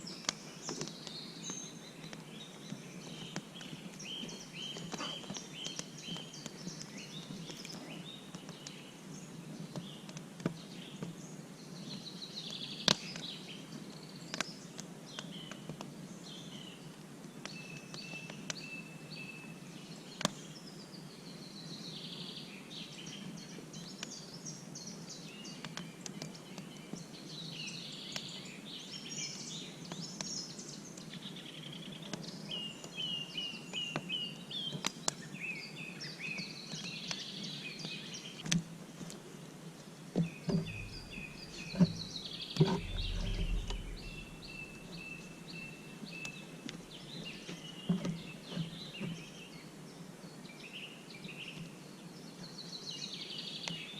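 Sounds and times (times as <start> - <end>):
songbirds singing and chirping: 0.0 - 53.9
outdoor background hum: 36.7 - 50.0.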